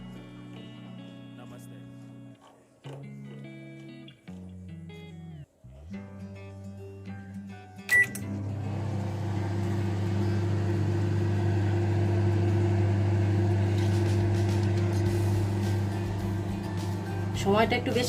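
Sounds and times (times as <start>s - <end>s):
microwave short beep: 7.9s - 8.3s
microwave oven humming: 7.9s - 17.6s.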